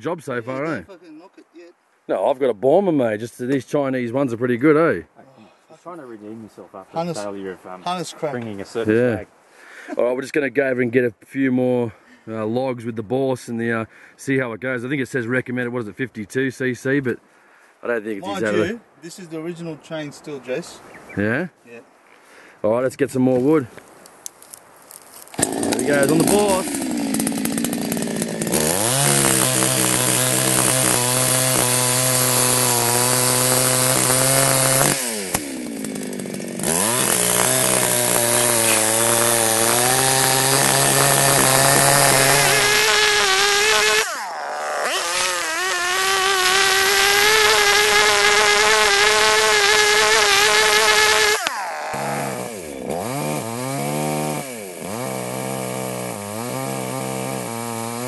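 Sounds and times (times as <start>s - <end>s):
chainsaw cutting logs: 18.3s - 18.7s, 25.3s - 58.0s.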